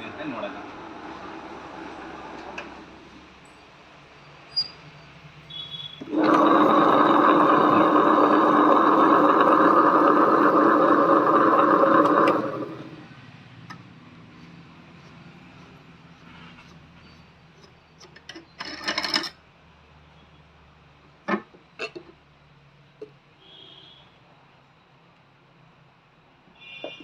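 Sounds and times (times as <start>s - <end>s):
stone wet grinder rumbling: 6.0s - 13.1s.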